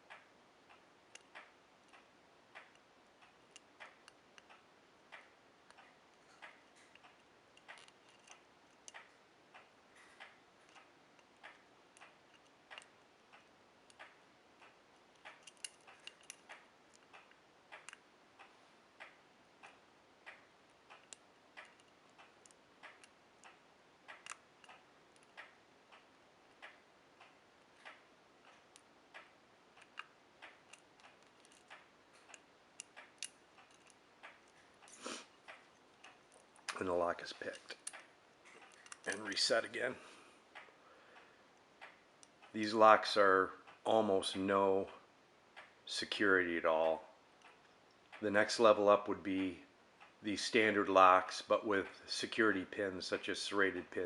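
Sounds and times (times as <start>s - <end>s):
lock pick clicking on pins: 6.8s - 9.1s, 15.1s - 18.0s, 24.1s - 25.4s, 29.8s - 34.6s, 37.4s - 39.4s.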